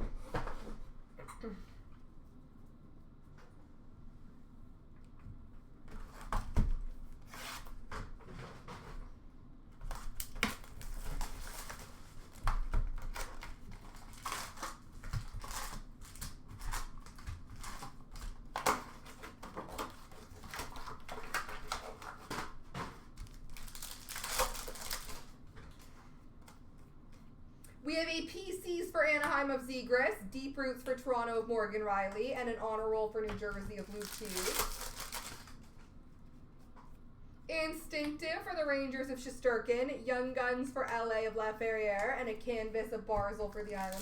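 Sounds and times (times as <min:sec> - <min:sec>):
foil wrappers crinkling and tearing: 0:09.9 - 0:26.0, 0:33.6 - 0:35.8, 0:43.6 - 0:44.0
cards being handled: 0:33.8 - 0:36.0.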